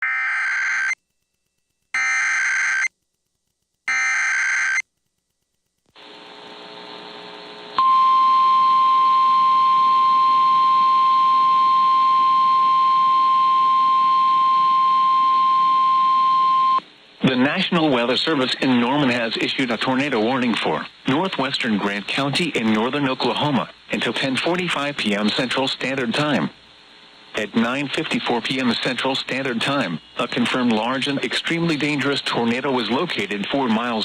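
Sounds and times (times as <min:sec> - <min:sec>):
radio static hiss: 0:05.9 - 0:07.8, 0:12.4 - 0:34.0.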